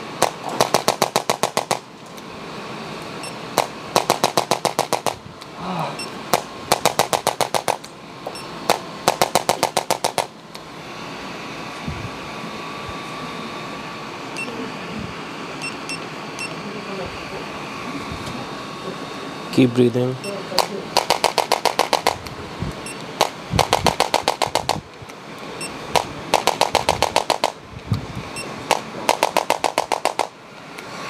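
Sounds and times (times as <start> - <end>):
steady hum: 0.0 - 31.0.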